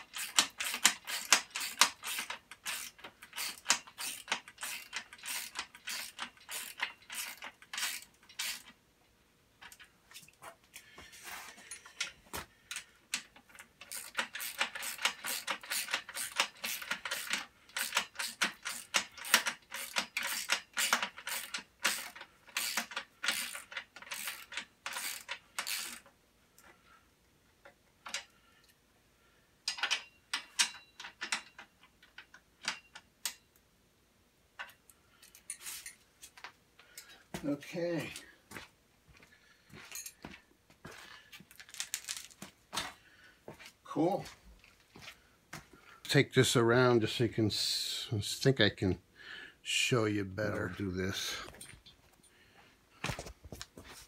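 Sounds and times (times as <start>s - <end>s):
ratchet wrench clicking: 0.1s - 8.7s, 13.8s - 26.0s.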